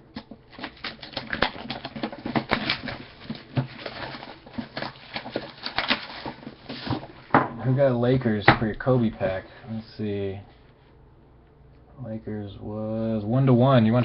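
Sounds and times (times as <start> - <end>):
plastic shrink-wrap crinkling and tearing: 0.5 - 7.2.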